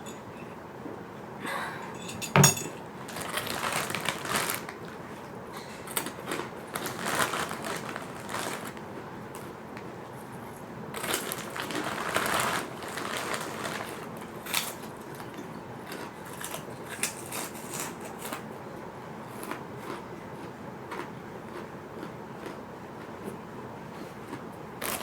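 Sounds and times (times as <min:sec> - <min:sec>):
crackers crunching when chewed: 0:05.8 - 0:09.8, 0:10.5 - 0:18.5, 0:19.2 - 0:25.0.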